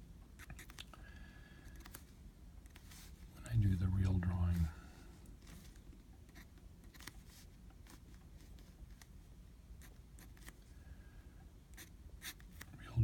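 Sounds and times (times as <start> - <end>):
pen nib scratching on paper: 6.3 - 7.0, 11.7 - 12.7.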